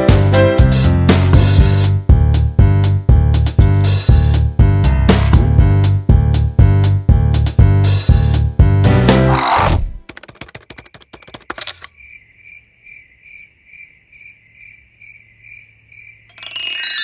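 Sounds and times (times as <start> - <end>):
music: 0.0 - 10.1
quick clicks: 9.9 - 12.0
cricket-like chirping: 10.2 - 17.0
bright bell-like chime: 16.3 - 17.0.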